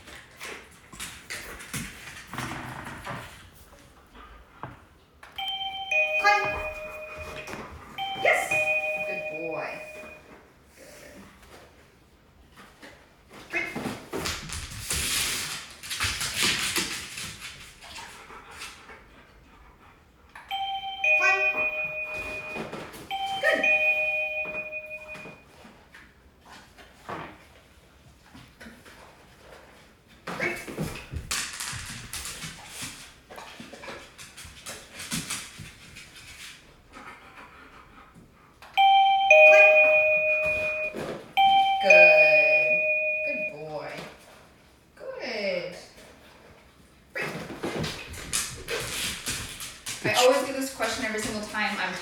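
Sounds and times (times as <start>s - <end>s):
doorbell chime melody: 5.4s - 10.2s, 20.5s - 25.4s, 38.8s - 43.9s
light clatters and rustles: 25.2s - 37.4s.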